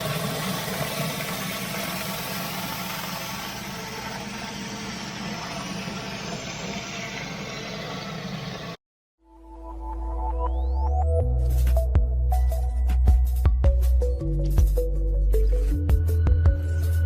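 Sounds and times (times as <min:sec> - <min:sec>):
pressure washer engine running: 0:00.0 - 0:08.8.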